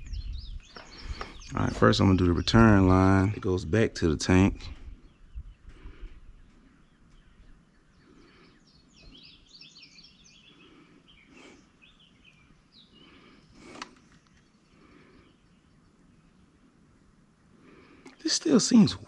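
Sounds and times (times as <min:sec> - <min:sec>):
faint birdsong chirps and trills: 0:00.0 - 0:19.0
sharp clicks: 0:13.6 - 0:14.5.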